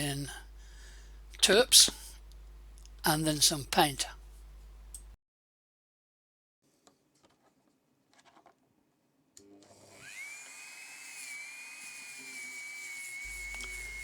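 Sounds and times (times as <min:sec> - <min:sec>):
rotary tool high-pitched whine: 0:09.7 - 0:14.0.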